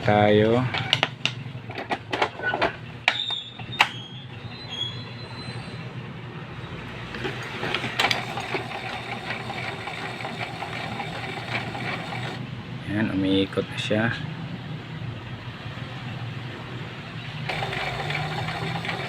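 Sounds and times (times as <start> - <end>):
printer mechanism running: 7.9 - 12.4, 17.5 - 19.0
printer clicks: 8.0 - 12.4, 17.5 - 19.0.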